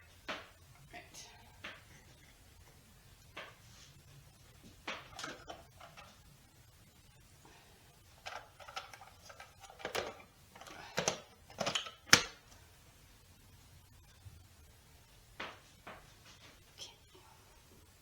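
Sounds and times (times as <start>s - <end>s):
kitchen utensils knocking and clicking: 4.8s - 6.2s, 8.2s - 12.6s.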